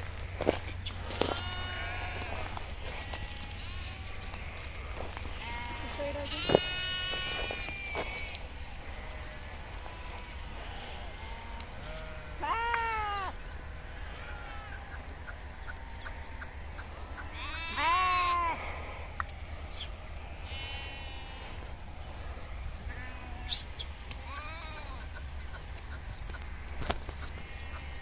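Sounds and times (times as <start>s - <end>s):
sheep bleating: 0.1s - 25.2s, 26.3s - 28.0s.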